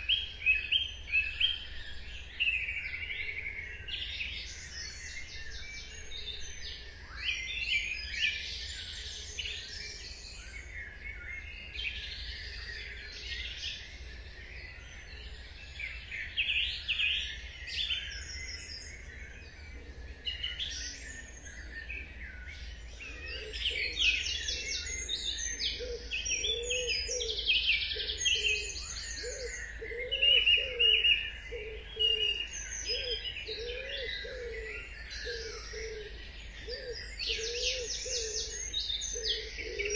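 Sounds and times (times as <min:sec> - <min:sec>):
songbirds singing: 0:00.0 - 0:39.9
low cooing call: 0:23.0 - 0:39.9.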